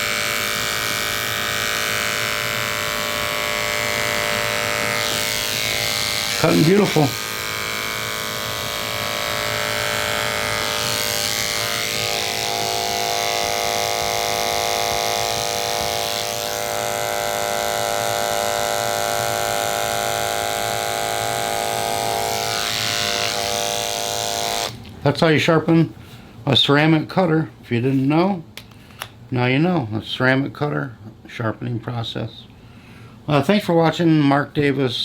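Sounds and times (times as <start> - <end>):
electric clipper motor hum: 0.0 - 24.8.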